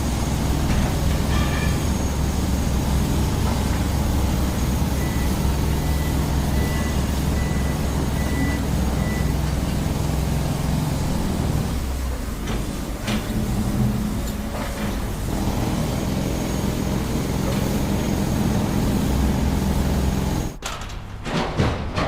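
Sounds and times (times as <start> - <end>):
diesel engine droning: 0.0 - 20.6.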